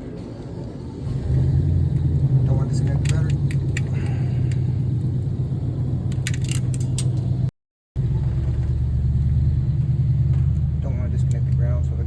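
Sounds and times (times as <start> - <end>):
steady low rumble: 0.0 - 12.0
metal tools clinking: 6.1 - 7.4.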